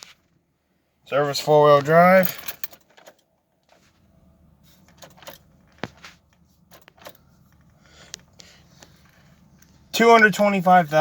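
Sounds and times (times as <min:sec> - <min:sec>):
handling clicks and rattles: 0:01.6 - 0:04.0, 0:04.8 - 0:09.7.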